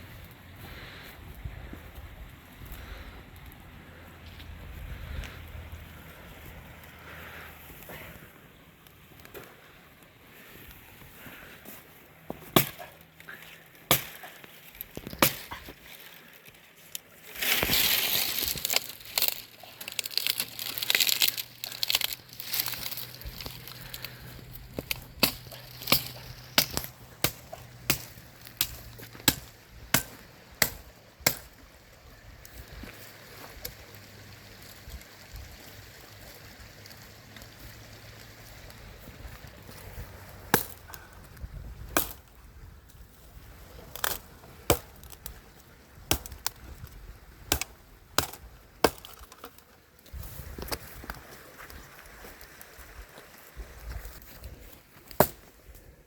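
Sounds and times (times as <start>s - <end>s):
chopping wood: 12.3s - 13.0s, 13.9s - 14.4s, 15.0s - 15.8s, 24.7s - 31.6s, 40.5s - 40.9s, 41.9s - 42.3s, 43.9s - 45.2s, 46.1s - 46.6s, 47.4s - 49.5s, 55.0s - 55.5s
steady chopping: 24.8s - 31.6s.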